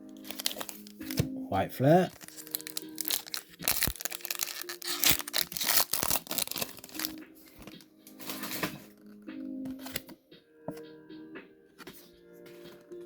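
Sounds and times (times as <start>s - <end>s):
foil wrapper tearing and crinkling: 0.2s - 1.2s, 2.0s - 7.2s.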